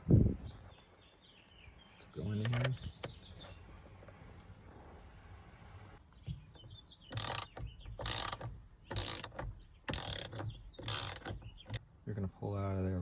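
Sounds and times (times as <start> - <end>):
socket ratchet clicking: 7.1 - 11.8.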